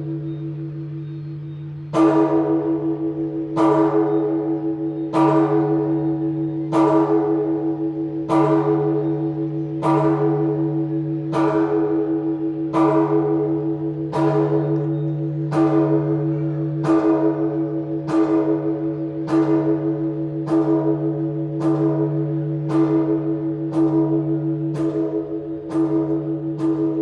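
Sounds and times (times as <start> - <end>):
church bell tolling: 0.0 - 27.0.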